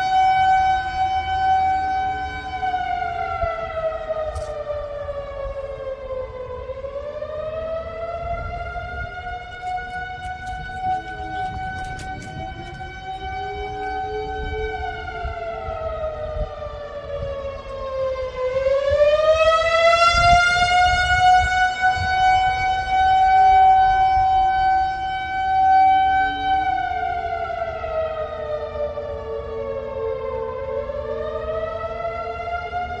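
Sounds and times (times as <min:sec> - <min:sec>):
warning siren wailing: 0:00.0 - 0:33.0.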